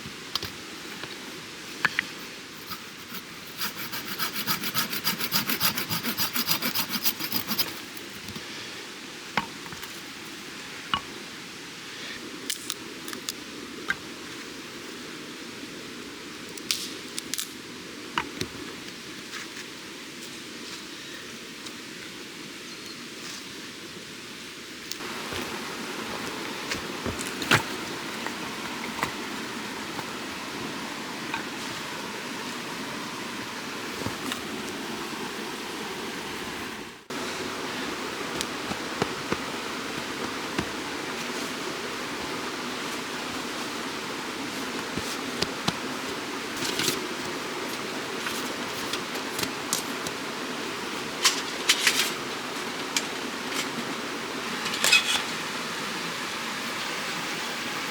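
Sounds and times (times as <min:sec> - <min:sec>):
steady hiss: 0:00.0 - 0:57.9
steady rushing noise: 0:25.0 - 0:51.4.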